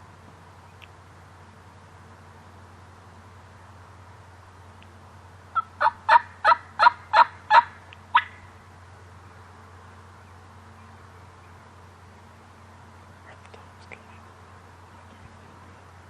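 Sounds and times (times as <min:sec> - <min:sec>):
turkey yelps: 0:05.6 - 0:08.4.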